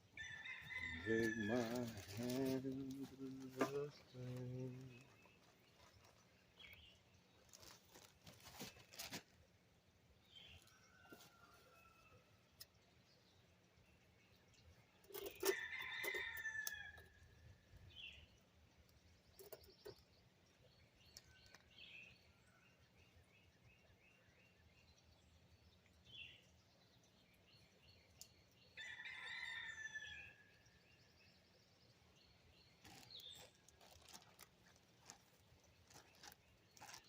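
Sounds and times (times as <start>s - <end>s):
rooster crowing: 0.2s - 1.9s.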